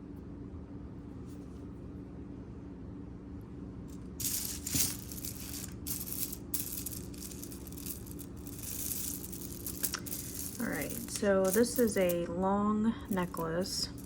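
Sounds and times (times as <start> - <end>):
jewelry rattling and rustling: 3.9 - 12.4, 13.0 - 14.0.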